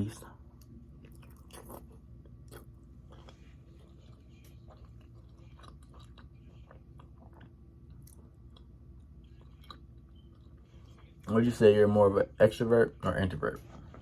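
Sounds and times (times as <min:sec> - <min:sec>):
faint low hum: 0:00.0 - 0:14.0
person chewing food: 0:00.4 - 0:11.3.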